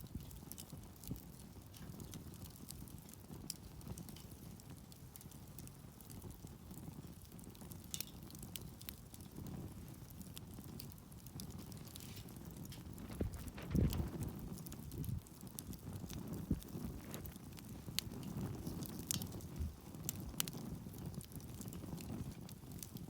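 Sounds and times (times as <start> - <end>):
campfire crackling: 0.0 - 23.0
low rumble: 13.1 - 14.2.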